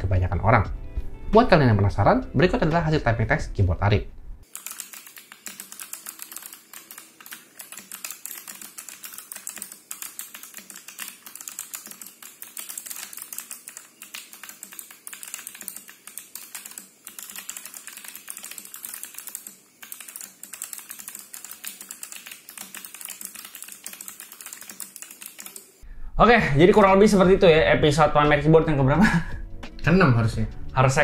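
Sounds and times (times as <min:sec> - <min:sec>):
mechanical keyboard typing: 0:04.4 - 0:25.8.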